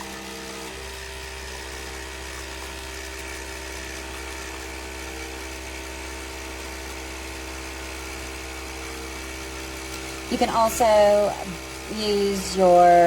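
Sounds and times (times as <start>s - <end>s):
espresso machine pump buzzing: 0.0s - 13.0s.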